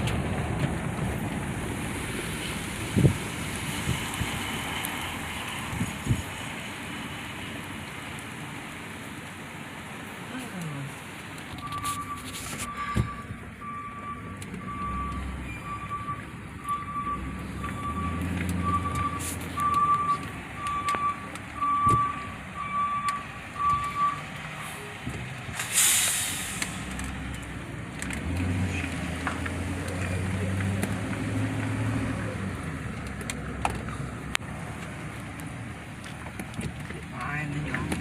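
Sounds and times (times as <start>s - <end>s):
vehicle backup alarm beeping: 11.5s - 25.0s
short hiss: 25.6s - 26.9s.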